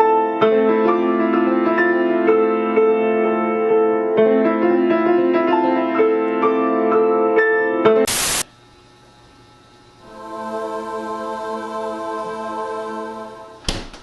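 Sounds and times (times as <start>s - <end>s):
piano music: 0.0s - 8.1s
faint hiss: 8.1s - 8.5s
loud burst of hiss: 8.1s - 8.5s.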